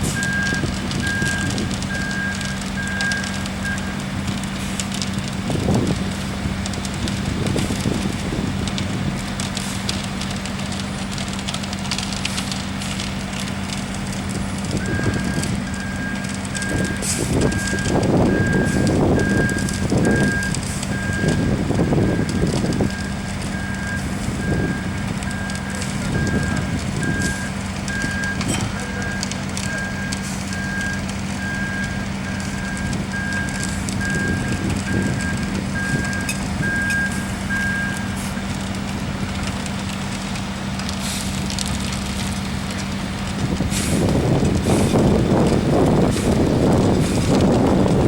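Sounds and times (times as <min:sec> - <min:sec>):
diesel engine drone: 0:00.0 - 0:48.0
vehicle backup alarm beeping: 0:00.1 - 0:04.1, 0:14.7 - 0:38.4.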